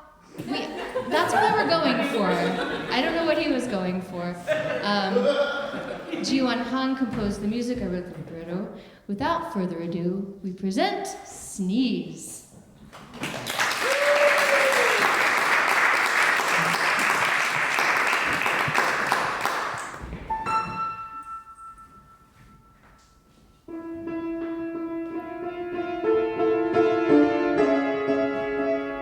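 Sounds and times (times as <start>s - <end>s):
piano chords: 0.0s - 10.4s, 19.9s - 29.0s
audience applauding: 13.0s - 20.3s.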